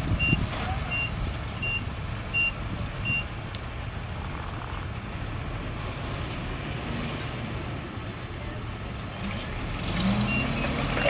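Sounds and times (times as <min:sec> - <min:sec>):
diesel engine rumble: 0:00.0 - 0:11.0
reversing alarm beeps: 0:00.2 - 0:03.3.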